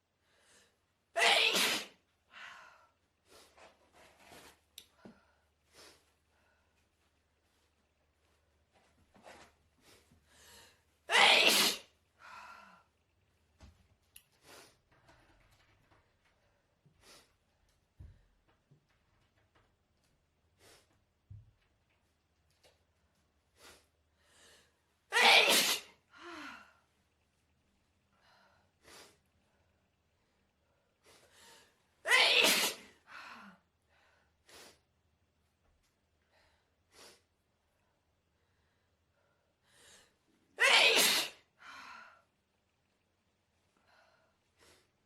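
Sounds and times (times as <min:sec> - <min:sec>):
man sneezing loudly: 0:25.2 - 0:25.9, 0:32.1 - 0:32.8, 0:40.6 - 0:41.4.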